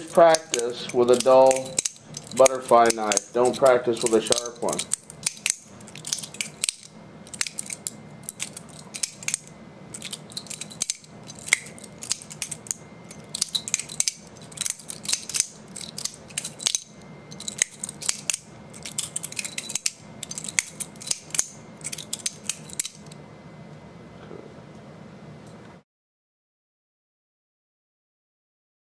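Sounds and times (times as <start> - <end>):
butterfly knife clicking: 0.0 - 23.1.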